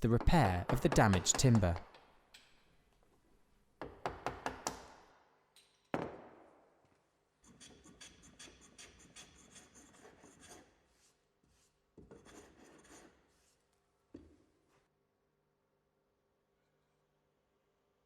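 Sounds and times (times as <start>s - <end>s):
hand tool scraping wood: 7.4s - 13.6s.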